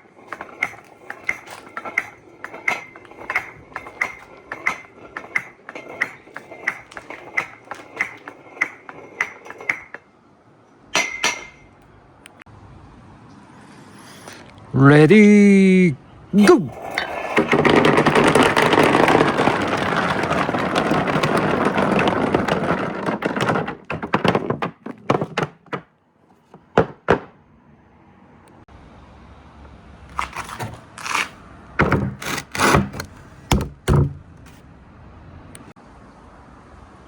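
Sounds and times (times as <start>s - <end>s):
marbles clacking: 16.6s - 25.8s
marbles rattling down a slope: 16.7s - 25.5s.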